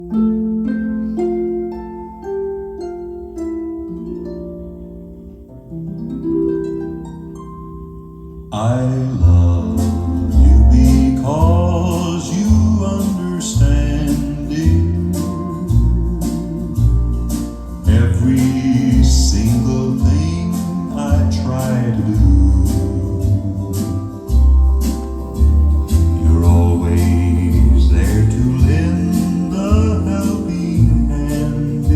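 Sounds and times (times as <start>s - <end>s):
plucked string intro: 0.0s - 31.9s
person singing: 8.5s - 31.9s
band music over stereo: 8.6s - 31.9s.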